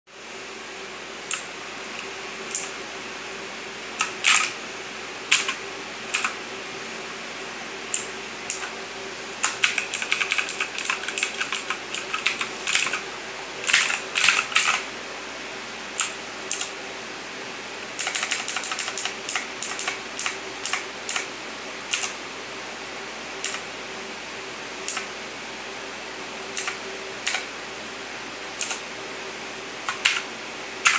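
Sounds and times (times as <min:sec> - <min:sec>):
faint steady hum: 0:00.1 - 0:30.9
mechanical keyboard typing: 0:04.0 - 0:04.6, 0:05.3 - 0:06.4, 0:09.4 - 0:14.8, 0:17.8 - 0:21.3, 0:21.9 - 0:22.2, 0:26.6 - 0:27.5, 0:28.6 - 0:28.8, 0:29.9 - 0:30.9.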